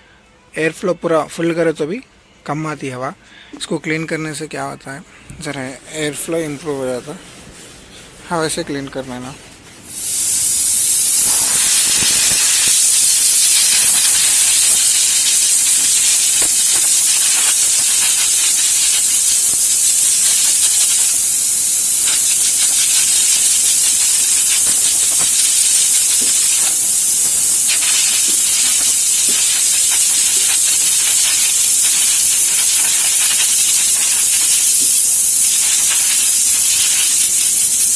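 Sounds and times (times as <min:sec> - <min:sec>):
compressed air hissing: 0:09.4 - 0:37.9.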